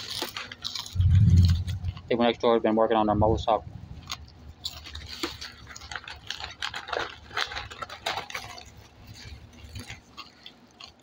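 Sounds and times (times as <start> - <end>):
pork rinds crunching: 0.0 - 2.6, 3.9 - 11.0
low steady rumble: 0.6 - 7.1.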